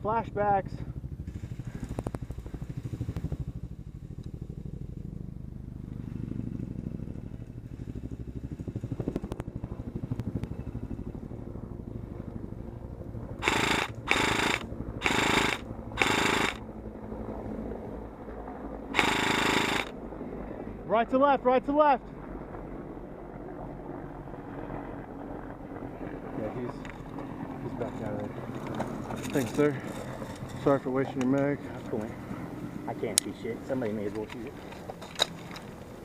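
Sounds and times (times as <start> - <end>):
low pulsing rumble: 0.0 - 20.9
airsoft gun firing bursts: 13.4 - 16.6, 19.0 - 20.0.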